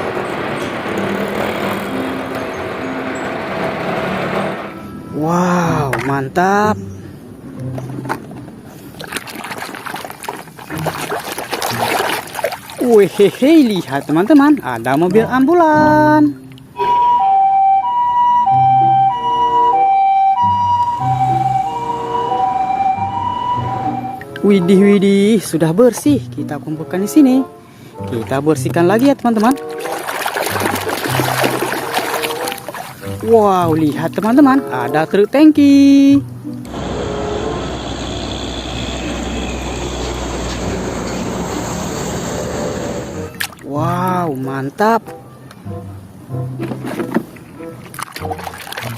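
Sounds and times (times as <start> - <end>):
water spraying: 8.9 - 14.9, 29.4 - 34.3, 36.6 - 43.7
two-tone ambulance siren: 16.8 - 24.3
steady low hum: 36.6 - 43.4.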